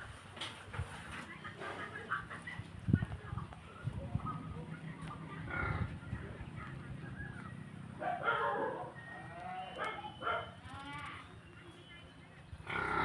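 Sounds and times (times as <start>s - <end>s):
farm animals calling: 5.2s - 13.0s.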